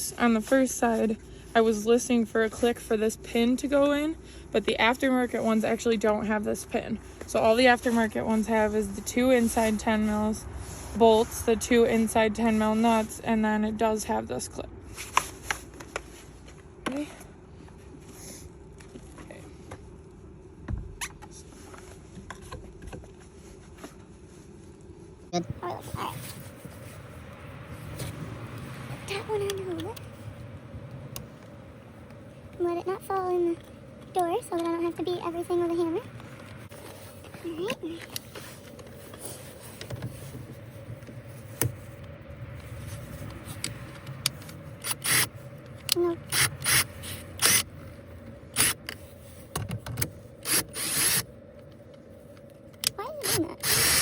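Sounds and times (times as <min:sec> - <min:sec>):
steady low hum: 0:00.0 - 0:54.0
hardware and tools clicking: 0:36.1 - 0:54.0.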